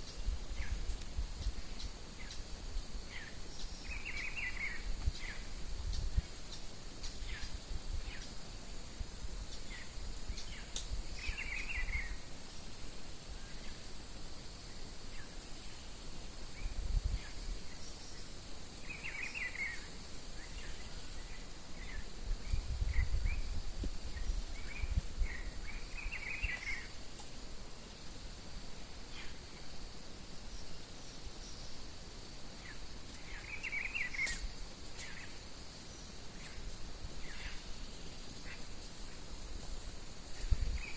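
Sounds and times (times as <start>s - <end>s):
steady high-pitched hiss: 0.0s - 40.9s
bird warbling song: 3.1s - 8.4s, 9.5s - 12.3s, 16.5s - 27.0s, 32.6s - 39.2s.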